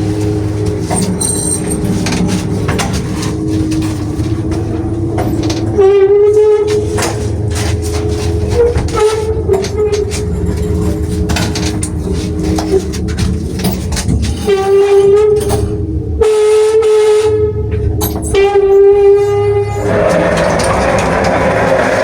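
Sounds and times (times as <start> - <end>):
lift car squealing: 18.3 - 22.0
low running rumble: 19.8 - 22.0.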